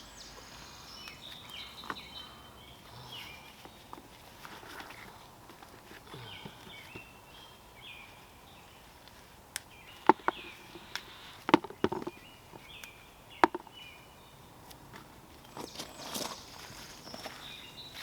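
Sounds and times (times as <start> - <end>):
faint bird chirps: 0.0 - 4.0, 9.7 - 14.4
digging knocks and scrapes in soil: 14.7 - 18.0.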